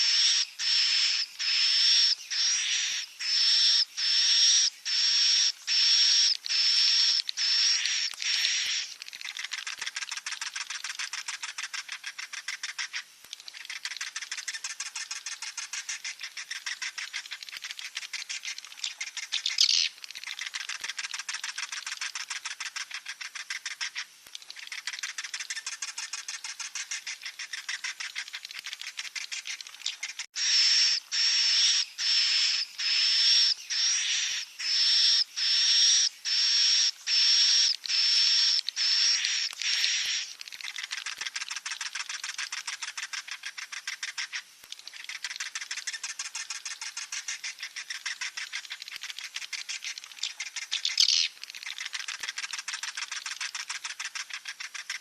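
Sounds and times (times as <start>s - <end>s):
bird chicks calling: 0.0s - 10.2s, 24.6s - 41.1s.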